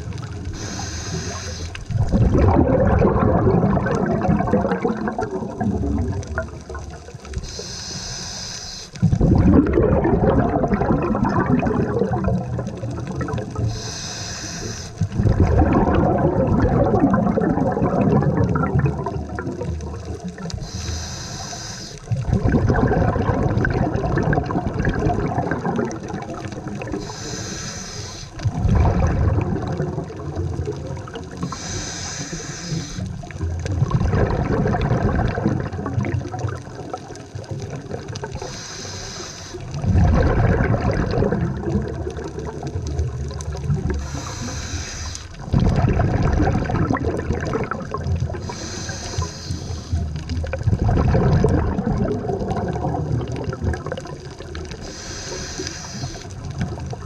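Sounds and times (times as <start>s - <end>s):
exhaled air bubbling underwater: 0.0s - 57.0s
regulator hissing inhale: 0.5s - 1.9s, 7.4s - 9.0s, 13.6s - 15.2s, 20.5s - 22.1s, 26.9s - 28.4s, 31.4s - 33.2s, 38.4s - 39.8s, 44.0s - 45.4s, 48.4s - 50.1s, 54.8s - 56.5s.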